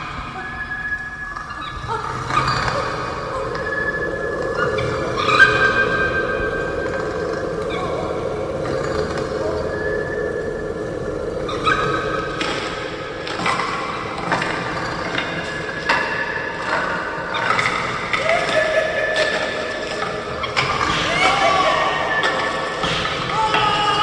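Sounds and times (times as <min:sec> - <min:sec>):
eerie pitched tones: 0:00.0 - 0:24.0
sharp knocks and clanks: 0:20.0 - 0:24.0.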